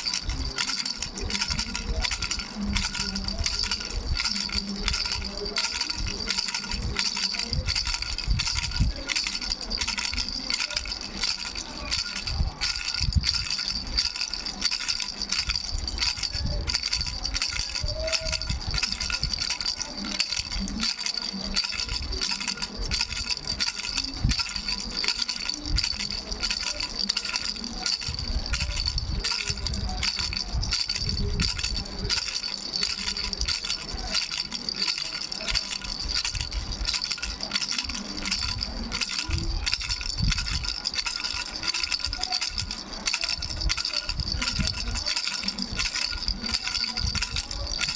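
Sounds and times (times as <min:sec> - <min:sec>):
baby rattle bells jingling: 0:00.0 - 0:47.9.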